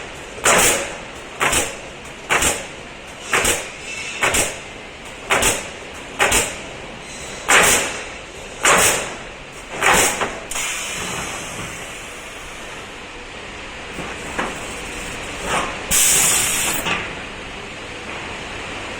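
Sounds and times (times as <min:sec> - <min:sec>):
machine running steadily: 0:00.0 - 0:18.9
nailing machine shots: 0:00.4 - 0:06.7, 0:07.4 - 0:10.8.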